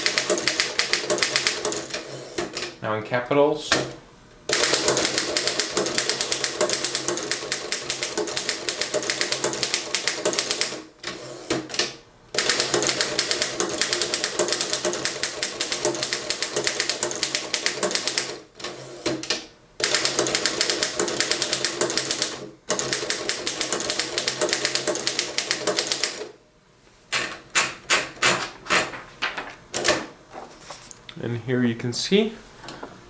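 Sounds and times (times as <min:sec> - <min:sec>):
manual typewriter typing: 0:00.0 - 0:02.8, 0:04.5 - 0:18.4, 0:19.0 - 0:26.3.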